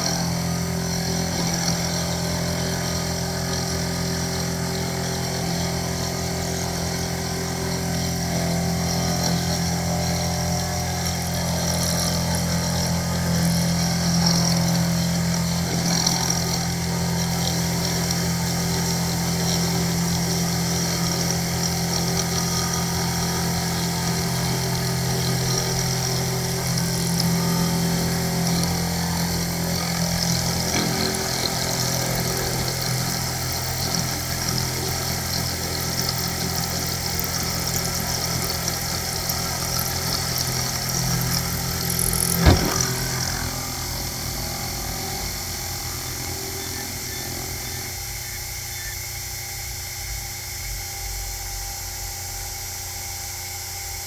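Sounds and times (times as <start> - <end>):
milling machine cutting metal: 0.0 - 48.6
sharp knock: 42.4 - 43.4.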